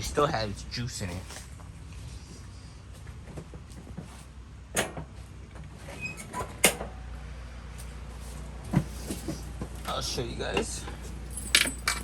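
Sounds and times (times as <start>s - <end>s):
knocks and clunks of handling: 8.3s - 12.0s.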